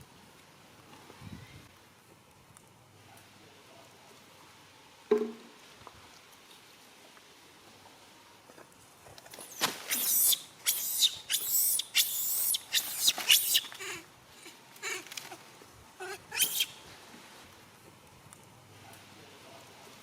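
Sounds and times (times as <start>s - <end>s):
baby monkey screaming: 9.6s - 14.0s, 16.0s - 16.8s.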